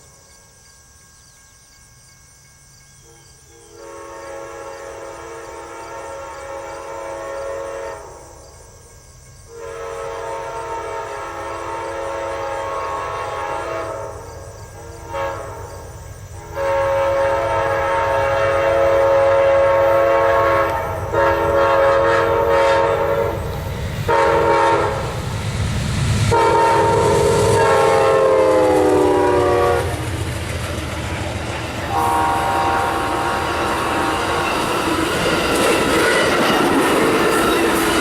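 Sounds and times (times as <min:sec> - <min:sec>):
train rumble: 0:00.0 - 0:38.0
locomotive horn blasts: 0:03.7 - 0:08.3, 0:09.5 - 0:14.2, 0:15.0 - 0:15.8, 0:16.5 - 0:23.4, 0:24.1 - 0:25.2, 0:26.3 - 0:30.1, 0:31.9 - 0:34.9.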